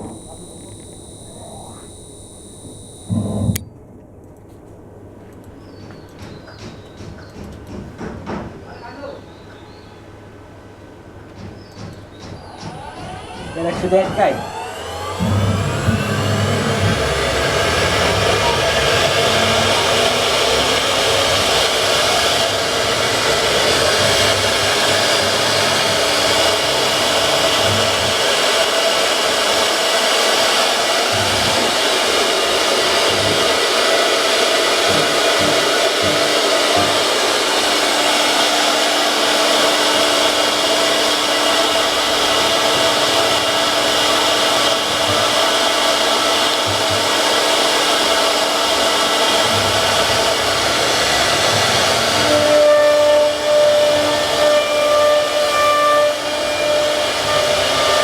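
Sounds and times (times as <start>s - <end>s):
router spindle whining: 0.0s - 3.7s, 11.8s - 58.0s.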